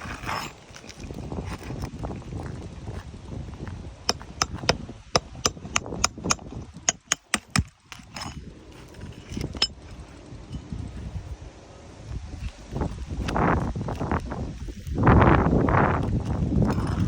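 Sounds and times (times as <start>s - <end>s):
hammer nailing roof shingle: 4.1s - 8.2s.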